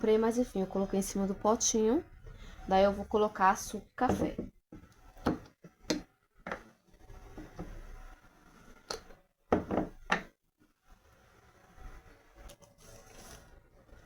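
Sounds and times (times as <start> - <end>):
jars knocking and clicking: 4.0 - 4.5, 9.6 - 10.3.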